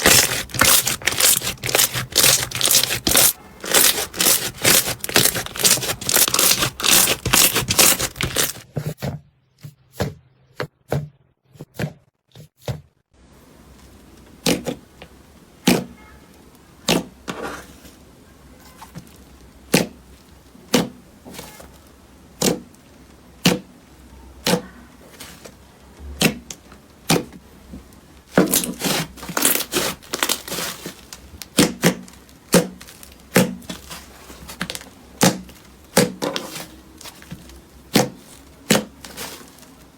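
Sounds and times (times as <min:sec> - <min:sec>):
slime crackling and popping: 0:00.0 - 0:08.6, 0:28.6 - 0:39.9.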